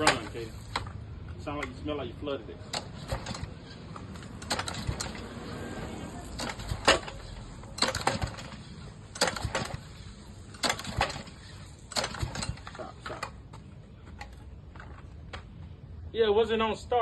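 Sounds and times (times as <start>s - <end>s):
small engine pull-start rattling: 2.6s - 13.4s.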